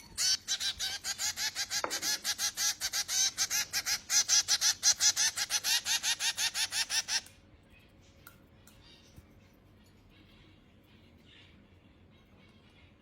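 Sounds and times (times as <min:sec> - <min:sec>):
finch chick begging calls: 0:00.0 - 0:07.2.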